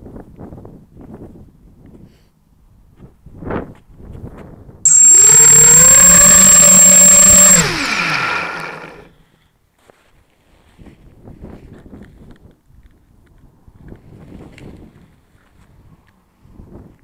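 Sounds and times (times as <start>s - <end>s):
drone motors whining: 4.9s - 9.1s.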